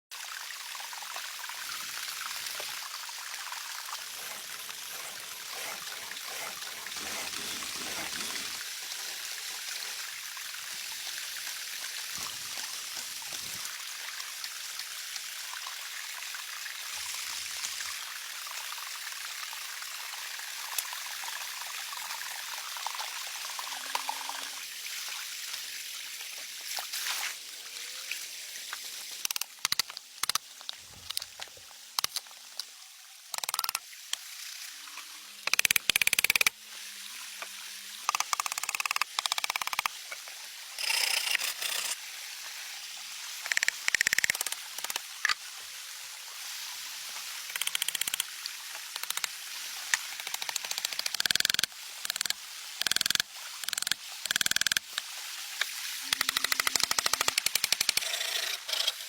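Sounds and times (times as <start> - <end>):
water trickling: 0.2 - 25.7.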